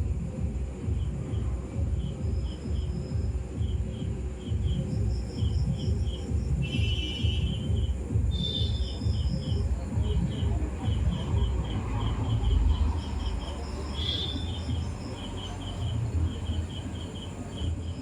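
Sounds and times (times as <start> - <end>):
short high chirping calls: 8.3 - 9.6, 13.3 - 16.0.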